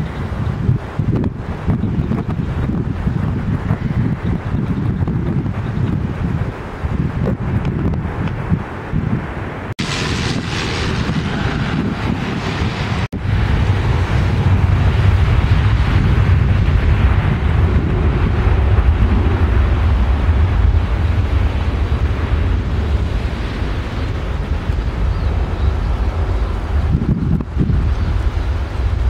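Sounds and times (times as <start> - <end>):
gusty wind buffeting microphone: 0.0 - 29.0.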